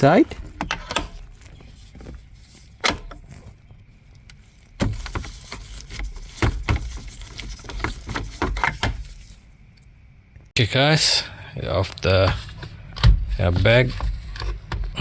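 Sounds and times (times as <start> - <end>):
rustling: 0.0 - 9.8.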